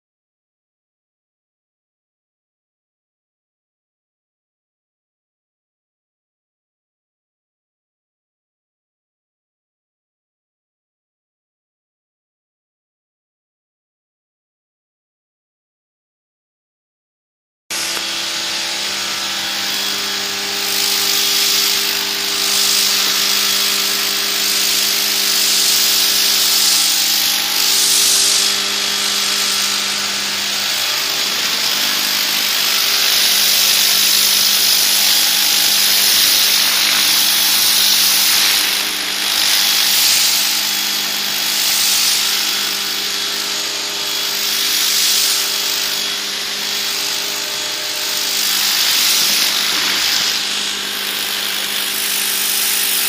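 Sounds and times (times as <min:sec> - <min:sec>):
pressure washer motor humming: 0:17.7 - 0:53.0
high-pressure water jet hissing: 0:17.8 - 0:53.0.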